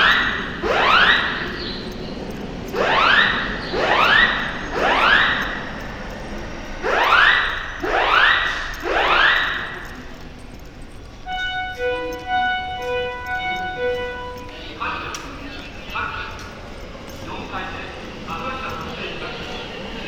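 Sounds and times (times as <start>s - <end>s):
fire alarm whoop tone: 0.0s - 2.0s, 2.7s - 5.8s, 6.8s - 10.1s, 11.2s - 14.5s.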